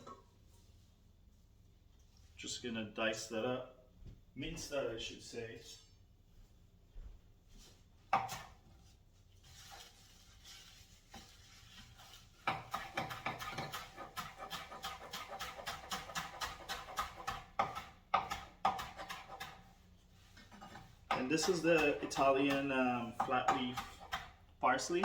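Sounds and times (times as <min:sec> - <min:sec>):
knife chopping on cutting board: 0:08.1 - 0:08.6, 0:12.4 - 0:19.7, 0:20.6 - 0:24.3.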